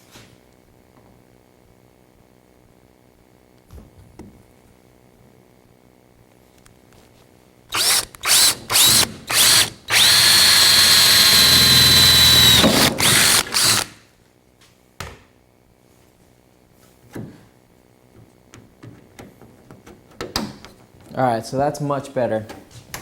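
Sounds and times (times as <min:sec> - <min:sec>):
power drill whining: 0:07.7 - 0:14.0.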